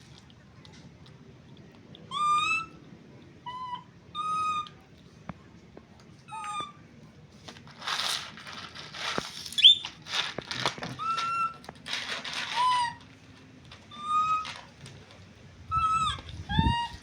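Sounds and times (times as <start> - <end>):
baby monkey squeaking: 2.1 - 2.8, 3.5 - 4.8, 6.3 - 6.8, 9.5 - 9.9, 11.0 - 11.6, 12.6 - 13.0, 13.9 - 14.6, 15.7 - 17.0
rustling and scuffling: 7.3 - 15.5.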